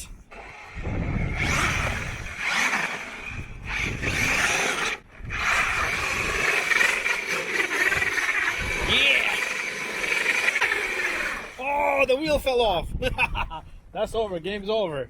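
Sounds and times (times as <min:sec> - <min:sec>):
electric motor whining: 0:00.0 - 0:11.6
tyres churning snow: 0:00.0 - 0:12.3.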